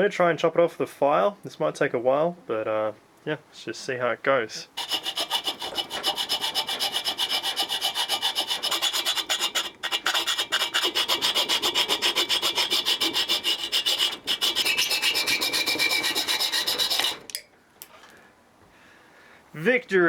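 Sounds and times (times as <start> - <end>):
file rasping on steel: 4.8 - 17.3.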